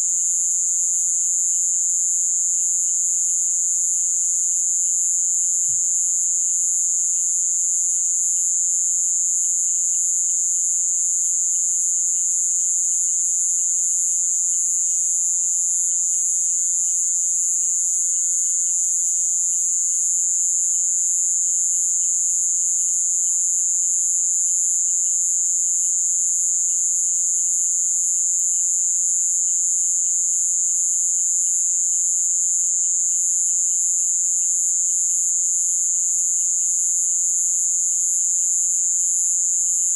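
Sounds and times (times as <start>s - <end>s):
faint frog calls: 4.7s - 7.4s, 20.0s - 24.3s, 24.9s - 32.0s.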